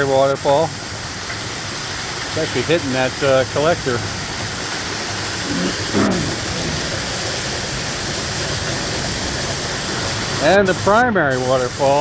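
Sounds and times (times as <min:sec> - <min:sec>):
heavy rain: 0:00.0 - 0:12.0
waterfall rushing: 0:00.0 - 0:12.0.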